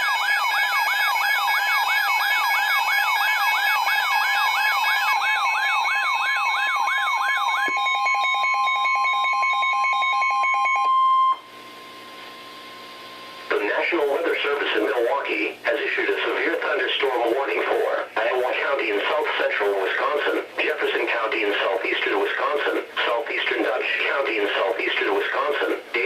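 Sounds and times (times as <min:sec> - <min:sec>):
warbling siren: 0:00.0 - 0:11.4
steady alarm tone: 0:00.0 - 0:13.4.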